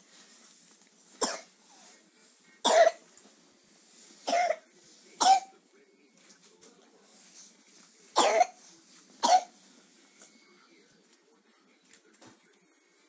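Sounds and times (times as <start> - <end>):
young child coughing: 1.2 - 1.5, 2.6 - 3.0, 4.3 - 4.6, 5.2 - 5.5, 8.2 - 8.6, 9.2 - 9.6.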